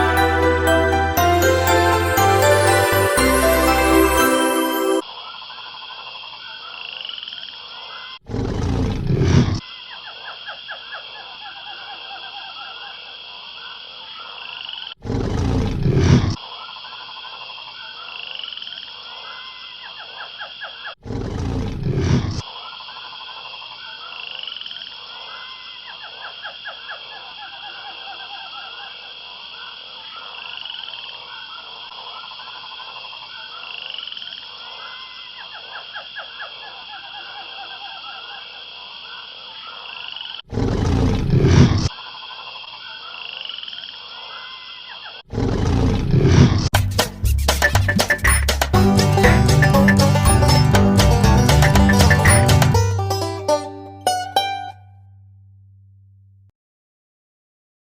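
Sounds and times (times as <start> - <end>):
frogs croaking: 9.7 - 14.9, 22.5 - 40.4, 42.0 - 45.2.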